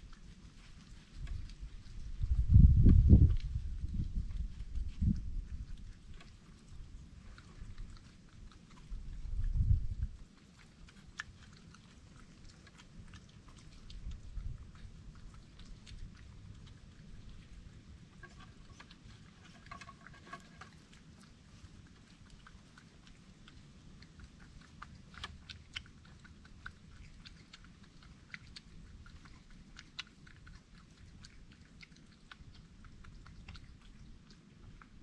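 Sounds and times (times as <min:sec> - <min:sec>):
animal chewing dry food: 0:00.0 - 0:35.0.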